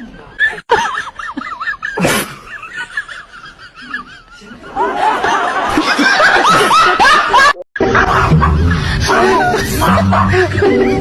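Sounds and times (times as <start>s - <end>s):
high-pitched giggling: 7.8s - 11.0s.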